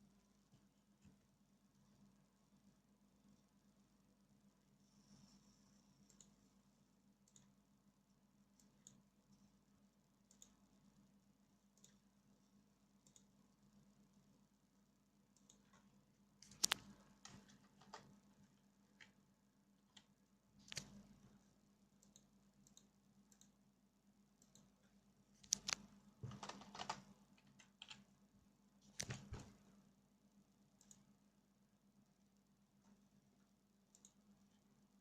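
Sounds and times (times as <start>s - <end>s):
keyboard and mouse clicks: 6.0s - 6.4s, 10.3s - 10.6s, 11.7s - 12.0s, 13.0s - 13.4s, 15.3s - 18.3s, 19.9s - 21.3s, 22.0s - 23.6s, 25.4s - 28.1s, 28.8s - 29.7s, 30.8s - 31.1s, 33.9s - 34.3s.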